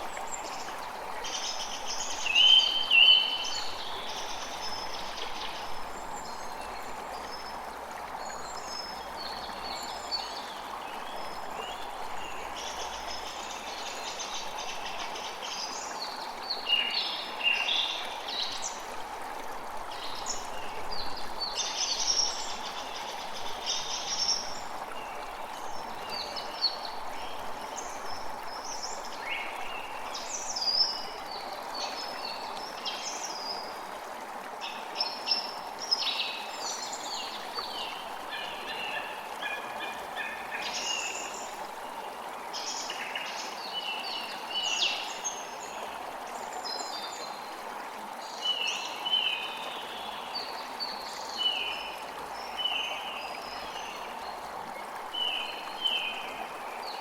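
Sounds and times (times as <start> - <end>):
running water: 0.0 - 57.0.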